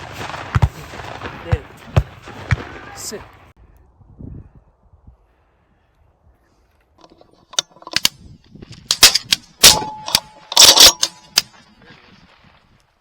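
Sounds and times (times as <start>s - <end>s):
shotgun shots: 0.0s - 3.2s, 8.9s - 11.4s.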